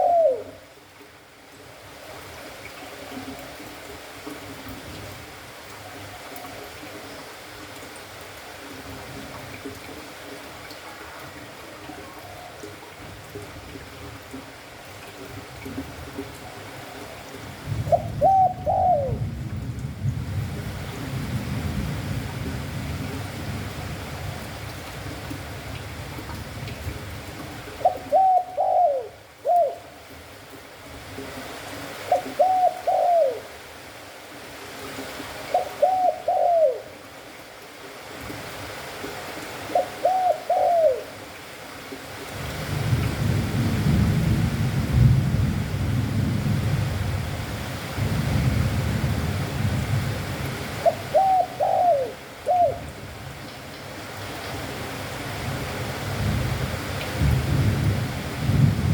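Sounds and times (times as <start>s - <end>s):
dove cooing: 0.0s - 0.7s, 11.0s - 13.4s, 16.2s - 19.2s, 27.7s - 30.0s, 32.0s - 33.6s, 35.4s - 37.0s, 39.6s - 41.3s, 50.7s - 53.0s.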